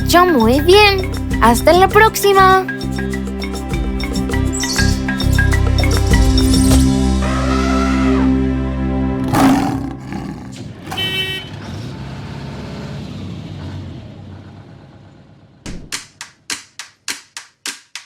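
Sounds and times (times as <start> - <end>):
jingle music: 0.0 - 7.2
sharp claps or percussion hits: 2.7 - 7.0, 15.7 - 18.0
loud roar sound effect: 9.2 - 11.2.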